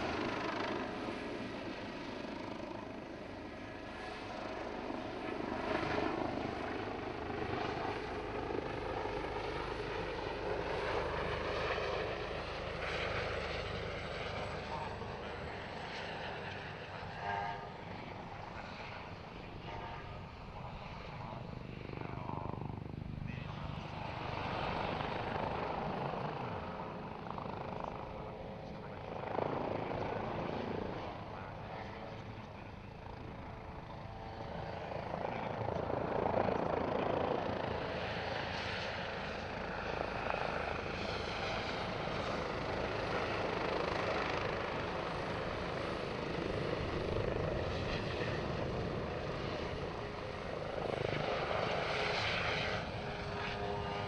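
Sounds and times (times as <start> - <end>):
helicopter rotor and turbine: 0.0 - 54.0.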